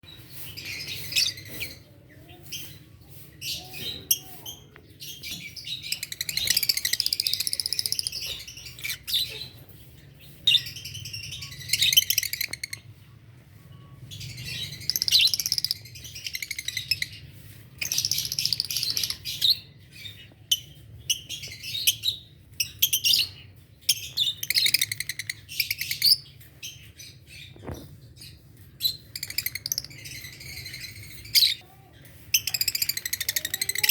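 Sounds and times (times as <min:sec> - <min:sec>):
birds chirping shrilly: 0:28.9 - 0:33.9.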